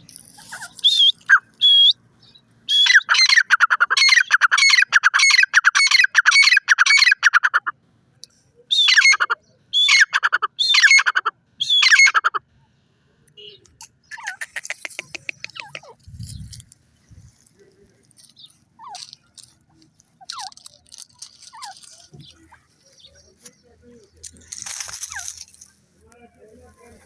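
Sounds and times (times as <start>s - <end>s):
francolin shrill calling: 0.4s - 2.0s, 2.7s - 7.6s, 8.7s - 12.3s.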